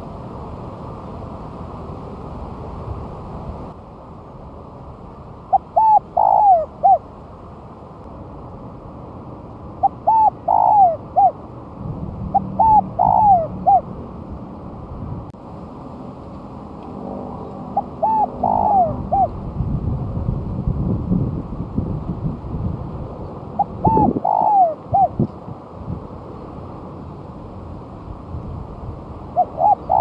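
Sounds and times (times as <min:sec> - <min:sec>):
dove cooing: 0:05.5 - 0:07.0, 0:09.8 - 0:11.4, 0:12.3 - 0:13.9, 0:17.7 - 0:19.4, 0:23.6 - 0:25.3, 0:29.4 - 0:30.0.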